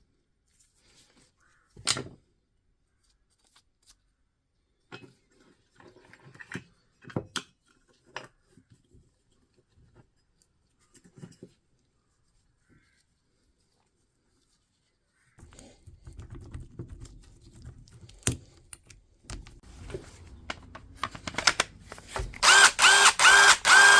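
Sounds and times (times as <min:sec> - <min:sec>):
soft rustling: 0:08.4 - 0:15.4, 0:19.6 - 0:20.7.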